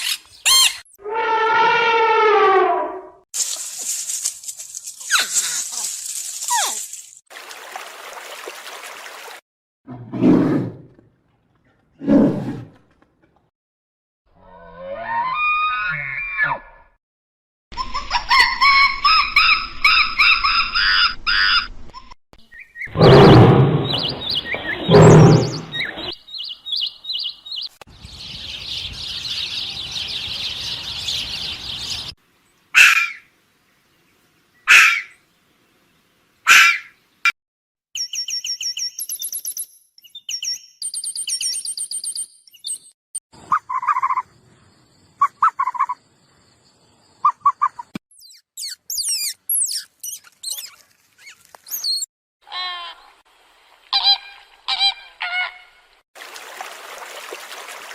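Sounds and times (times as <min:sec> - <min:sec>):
sharp animal calls: 0:22.9 - 0:26.1, 0:32.8 - 0:33.3, 0:34.7 - 0:35.2, 0:36.5 - 0:36.9, 0:43.4 - 0:44.3, 0:45.2 - 0:46.0
rapid high chirping and trills: 0:48.1 - 0:50.8
high gliding bird whistles: 0:48.2 - 0:50.8.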